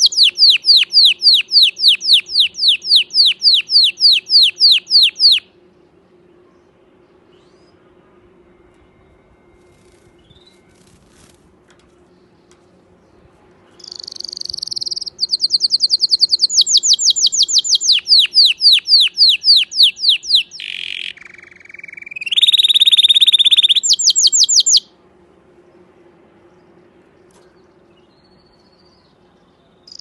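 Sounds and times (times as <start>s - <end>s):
canary singing: 0.0s - 5.6s, 13.7s - 25.0s, 29.8s - 30.0s.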